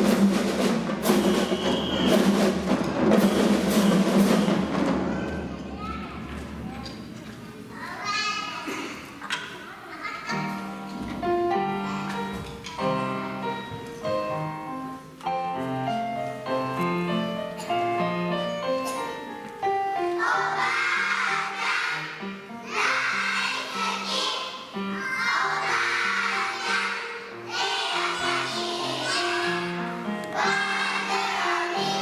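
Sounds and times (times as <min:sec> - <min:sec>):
instrumental melody: 0:10.5 - 0:20.2
young children singing: 0:18.7 - 0:32.0.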